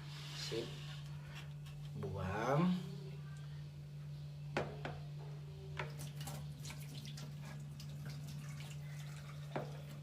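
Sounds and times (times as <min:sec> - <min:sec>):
water running into sink: 0:05.8 - 0:10.0.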